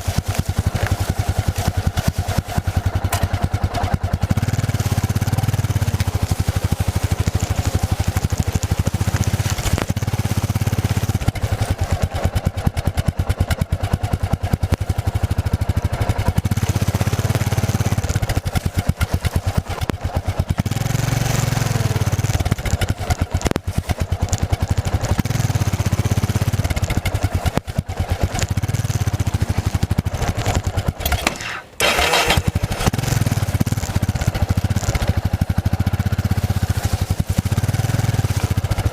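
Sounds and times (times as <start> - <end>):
motorcycle engine running: 0.0 - 38.9.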